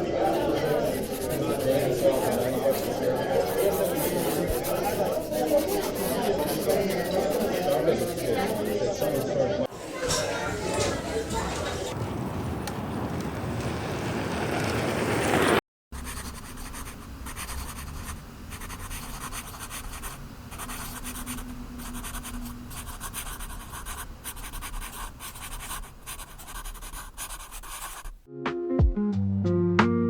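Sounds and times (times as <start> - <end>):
busy background noise: 0.0 - 15.4, 16.0 - 28.2
pen scratching on paper: 0.2 - 9.3, 16.0 - 28.3.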